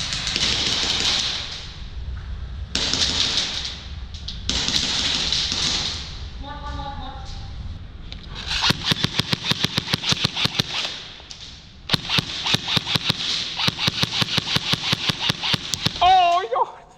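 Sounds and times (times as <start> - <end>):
airsoft gun firing full auto: 0.0 - 1.7, 2.8 - 3.8, 4.5 - 6.1, 8.5 - 11.2, 11.9 - 16.0.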